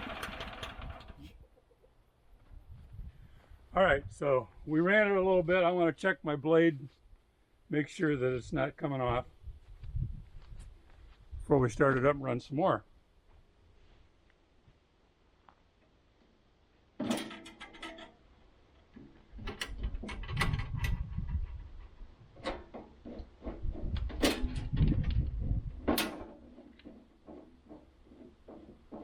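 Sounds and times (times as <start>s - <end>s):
metal clanks and rattles: 17.0s - 29.0s
heavy knocks and scraping: 18.9s - 29.0s.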